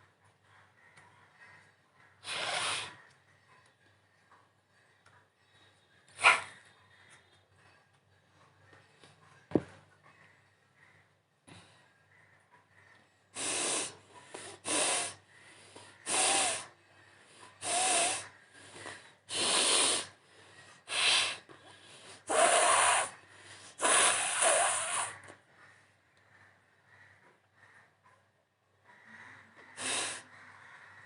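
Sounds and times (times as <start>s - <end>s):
person blowing nose hard: 2.2s - 3.0s, 13.4s - 14.0s, 14.6s - 15.2s, 16.1s - 16.7s, 17.6s - 18.2s, 19.3s - 20.2s, 20.9s - 21.4s, 22.2s - 23.2s, 23.8s - 25.2s, 29.8s - 30.2s.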